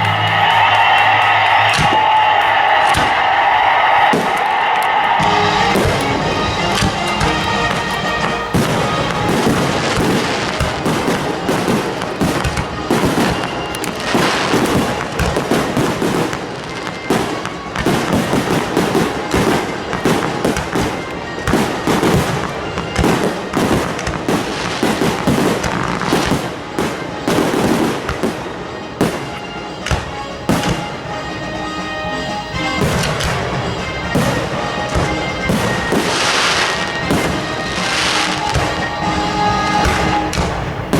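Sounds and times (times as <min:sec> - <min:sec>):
fireworks bangs and crackles: 0:00.0 - 0:31.5, 0:32.5 - 0:40.9.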